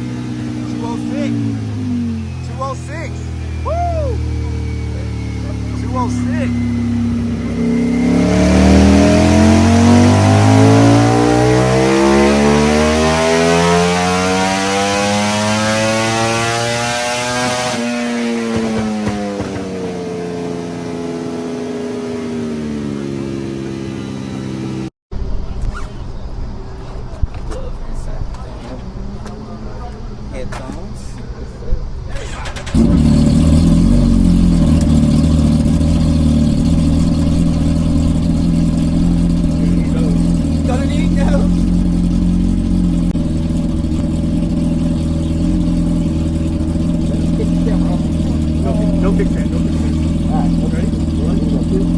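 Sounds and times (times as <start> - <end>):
motorcycle engine accelerating: 0.0 - 27.1, 32.2 - 51.9
engine starting and idling: 32.1 - 51.9.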